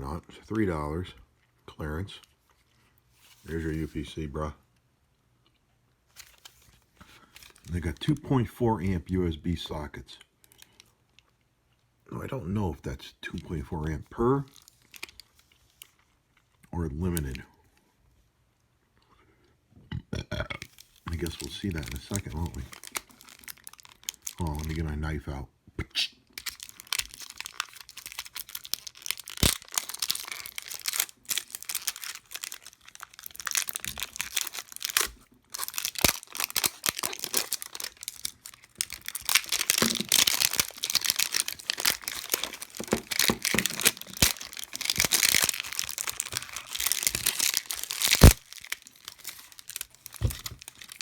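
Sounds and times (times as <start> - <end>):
plastic packaging crinkling and tearing: 6.1 - 8.2, 14.2 - 17.4, 20.6 - 25.0, 26.3 - 51.0
sharp cracks: 34.9 - 51.0.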